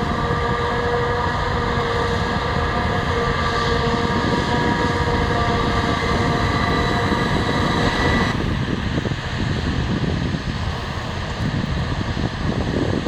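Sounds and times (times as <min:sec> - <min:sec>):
high mechanical whine: 0:00.0 - 0:10.1
deep engine rumble: 0:00.0 - 0:13.0.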